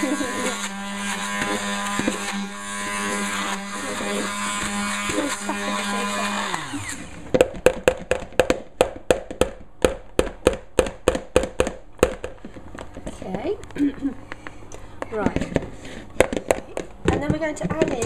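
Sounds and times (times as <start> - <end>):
electric blender running: 0.0 - 7.5
sharp knocks: 7.3 - 13.0.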